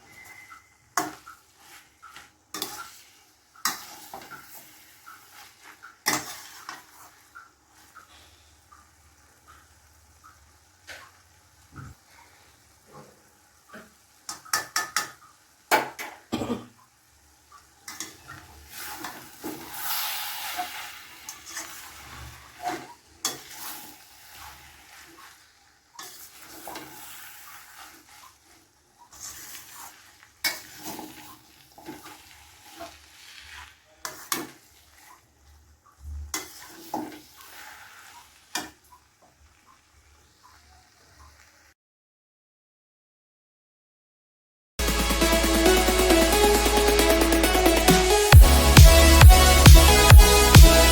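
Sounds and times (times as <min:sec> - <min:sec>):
metal spatula scraping a pan: 0:00.0 - 0:08.4, 0:17.6 - 0:41.5
food sizzling: 0:00.0 - 0:41.8.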